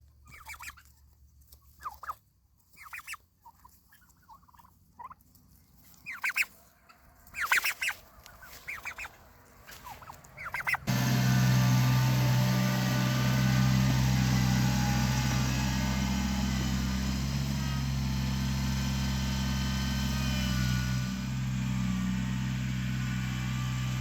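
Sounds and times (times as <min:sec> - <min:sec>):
bird calls rattling bursts: 0:09.9 - 0:10.9.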